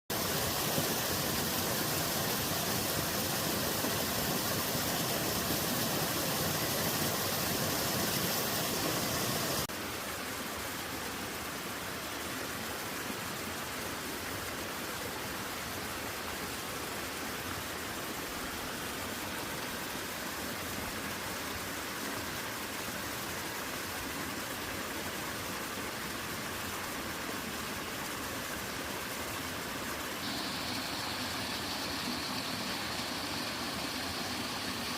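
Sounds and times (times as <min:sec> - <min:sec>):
waterfall rushing: 0:00.1 - 0:09.7, 0:29.4 - 0:34.9.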